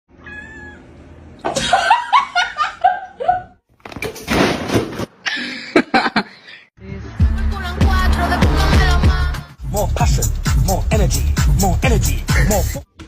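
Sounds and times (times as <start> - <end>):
person laughing: 5.2 - 6.6, 12.3 - 12.8.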